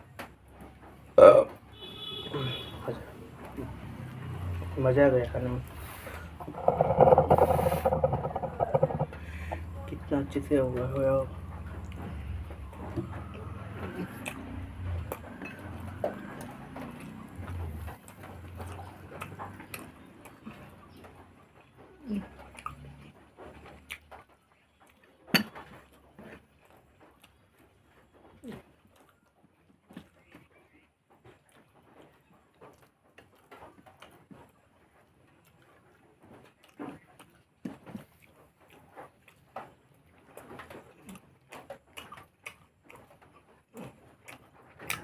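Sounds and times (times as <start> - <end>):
person chewing food: 5.6 - 45.0
person chewing: 11.8 - 20.8, 21.6 - 22.8, 36.5 - 39.6, 40.4 - 45.0.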